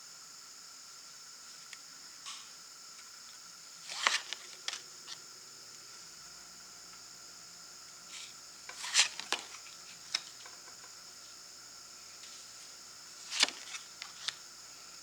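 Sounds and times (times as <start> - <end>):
cards sliding and tapping: 3.8 - 5.2, 8.1 - 11.0, 12.2 - 14.4.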